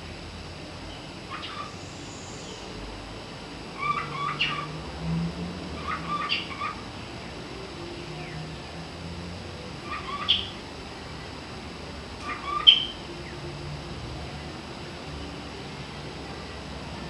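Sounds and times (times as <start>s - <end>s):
cockatiel chirping: 1.3s - 2.6s, 5.8s - 6.8s, 9.8s - 10.6s, 12.2s - 13.0s.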